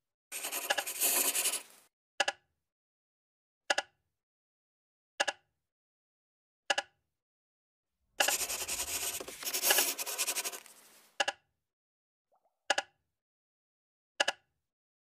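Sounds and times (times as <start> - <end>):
harsh scratchy noise: 0.3 - 1.8, 8.2 - 11.1.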